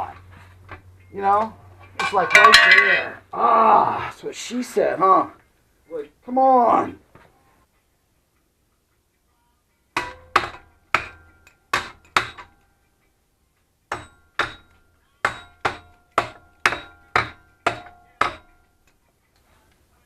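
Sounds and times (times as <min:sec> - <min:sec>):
hammer striking metal: 0:02.0 - 0:03.2, 0:10.0 - 0:12.6, 0:13.9 - 0:18.7.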